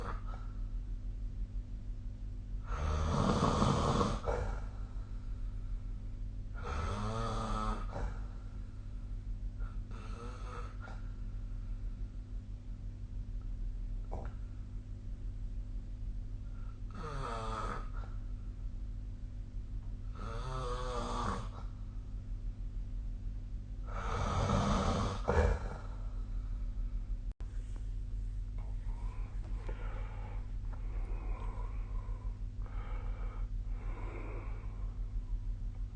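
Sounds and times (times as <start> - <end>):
steady low hum: 0.0 - 35.9
person snoring: 2.6 - 4.8, 6.6 - 8.4, 9.6 - 11.1, 16.6 - 18.2, 20.1 - 21.7, 23.8 - 26.2, 28.9 - 35.0.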